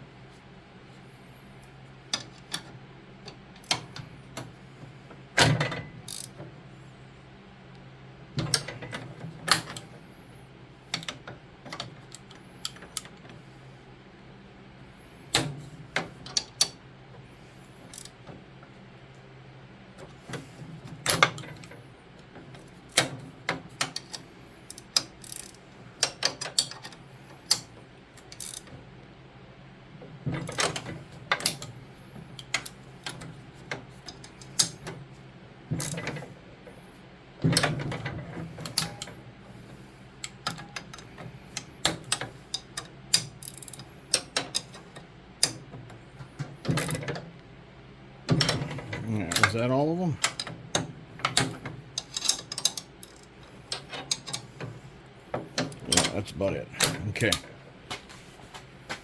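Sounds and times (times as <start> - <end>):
low steady hum: 0.0 - 59.0
ratchet wrench clicking: 6.1 - 6.4, 17.9 - 18.2, 24.0 - 25.6, 28.4 - 28.7, 42.5 - 44.7.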